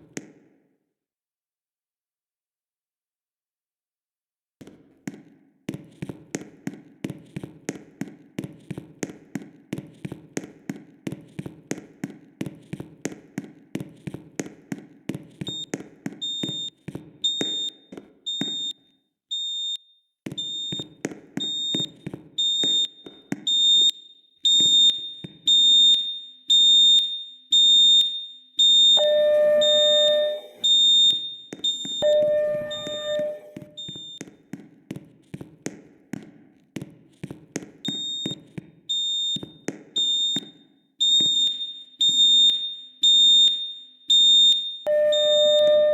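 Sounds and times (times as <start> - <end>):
pulsing fire alarm signal: 15.5 - 34.2, 37.9 - 45.9
long low alarm tones: 24.6 - 34.2, 41.1 - 45.9
high-pitched beep: 29.0 - 34.2, 44.9 - 45.9.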